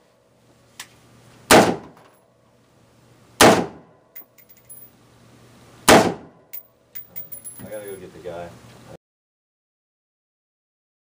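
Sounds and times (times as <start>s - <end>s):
rifle shots: 1.5s - 2.0s, 3.4s - 3.8s, 5.9s - 6.3s.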